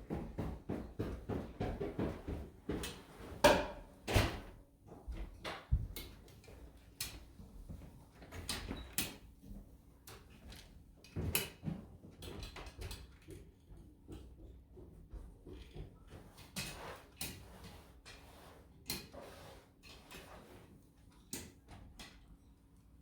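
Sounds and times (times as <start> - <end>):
wet mop swishing on floor: 16.1 - 20.8.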